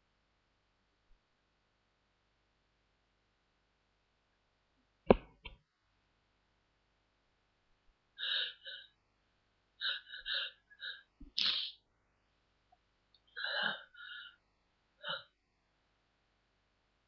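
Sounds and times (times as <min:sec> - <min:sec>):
catching breaths: 0:08.2 - 0:08.9, 0:09.8 - 0:11.8, 0:13.4 - 0:14.4
person sneezing: 0:09.8 - 0:11.8.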